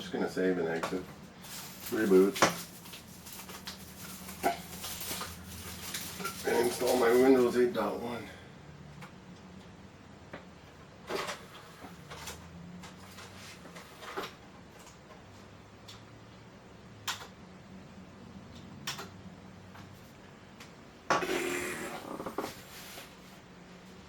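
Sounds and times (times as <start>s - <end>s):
rustling handling noise: 0.4s - 8.1s, 11.1s - 15.5s, 22.3s - 24.0s.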